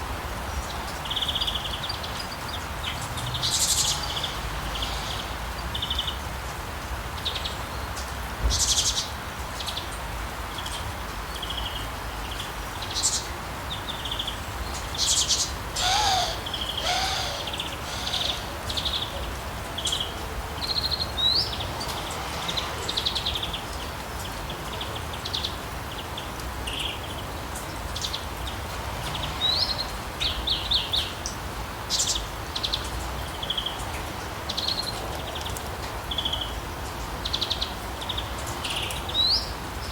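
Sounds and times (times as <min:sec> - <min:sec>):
rain falling: 0:00.0 - 0:39.9
birds chirping: 0:13.7 - 0:22.2.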